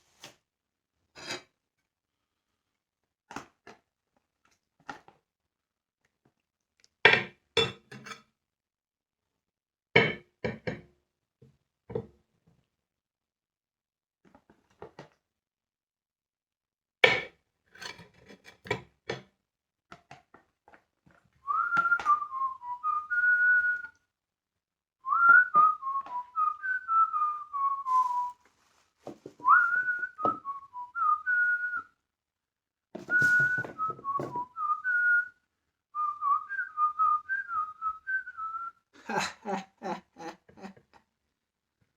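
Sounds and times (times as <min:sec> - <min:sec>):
person whistling a tune: 0:21.5 - 0:24.0, 0:25.0 - 0:28.4, 0:29.4 - 0:32.0, 0:33.0 - 0:35.4, 0:36.0 - 0:38.9
brief clatter: 0:33.0 - 0:34.5.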